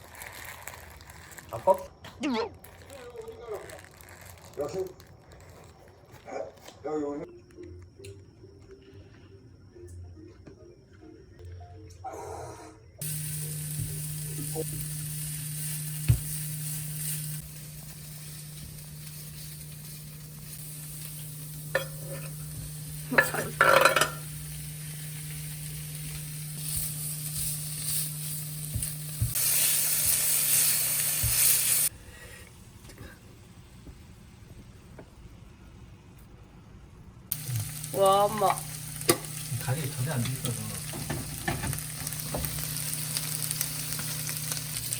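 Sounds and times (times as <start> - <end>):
food sizzling in a frying pan: 0.0 - 1.7, 13.0 - 31.9, 37.3 - 44.9.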